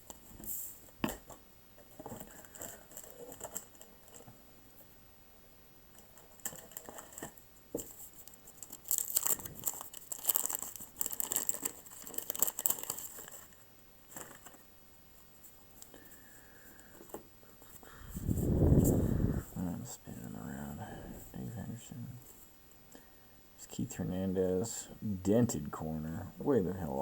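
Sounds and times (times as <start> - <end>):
wrapper crinkling and tearing: 8.6 - 14.5.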